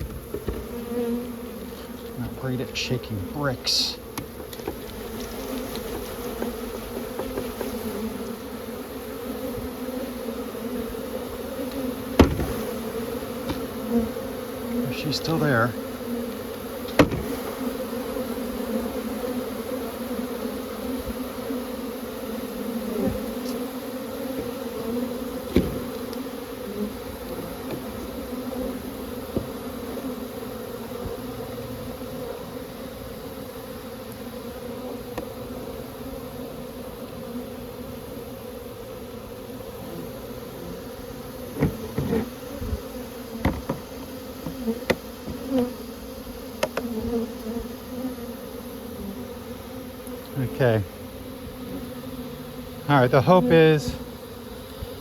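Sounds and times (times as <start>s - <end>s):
sharp knocks: 0.0s - 0.7s, 12.2s - 12.6s, 16.9s - 17.4s, 25.5s - 25.9s, 43.4s - 45.4s
honeybees buzzing: 0.0s - 55.0s.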